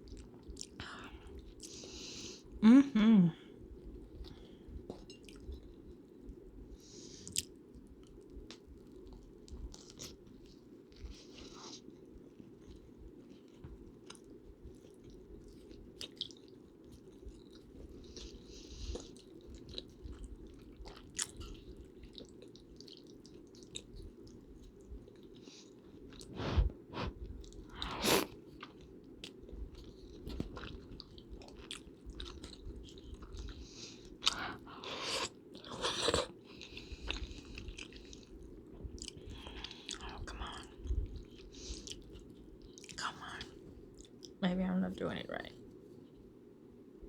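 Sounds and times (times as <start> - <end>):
low background noise: 0.0 - 47.0
close chewing and biting: 7.2 - 26.4, 27.3 - 44.4.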